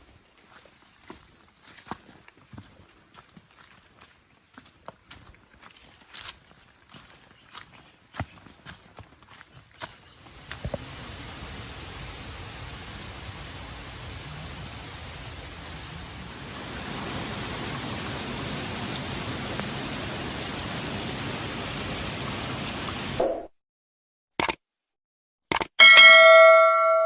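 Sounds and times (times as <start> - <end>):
insects droning: 0.0 - 23.2
waterfall rushing: 14.8 - 23.2.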